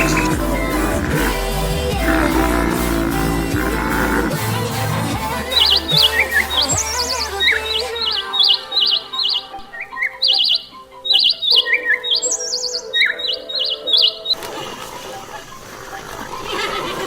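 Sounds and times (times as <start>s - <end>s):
bird singing warbled chirps: 5.3s - 14.4s.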